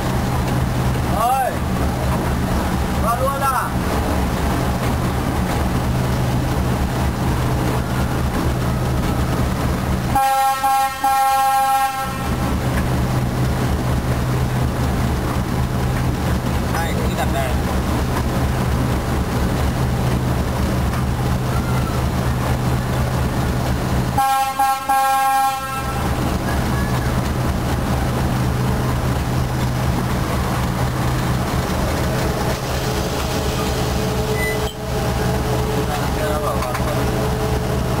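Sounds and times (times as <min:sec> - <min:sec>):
diesel locomotive engine droning: 0:00.0 - 0:38.0
locomotive horn blasts: 0:10.1 - 0:12.4, 0:24.2 - 0:26.2.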